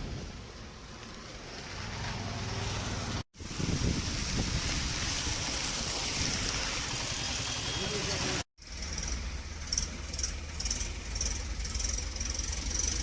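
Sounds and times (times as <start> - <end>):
vehicle road noise: 0.0 - 13.0
wind buffeting microphone: 3.4 - 5.5.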